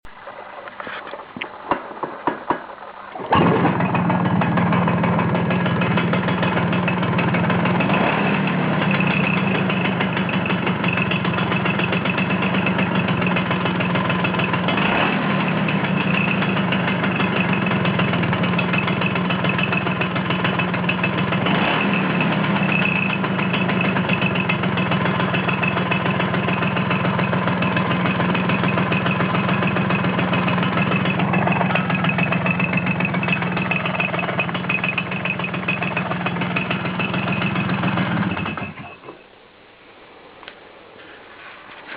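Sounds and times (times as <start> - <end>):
metallic engine noise: 0.1 - 14.9, 15.5 - 41.9
sharp knocks: 1.4 - 4.0
scooter engine idling: 3.2 - 39.4.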